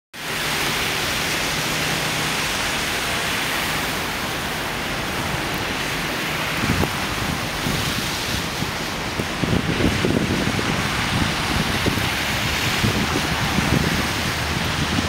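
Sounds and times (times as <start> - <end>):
blizzard wind rushing: 0.2 - 15.0
wind buffeting microphone: 0.3 - 15.0.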